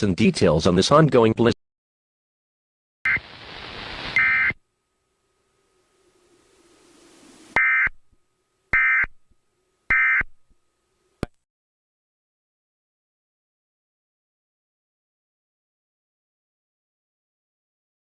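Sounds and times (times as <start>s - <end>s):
hiss: 6.1s - 7.6s.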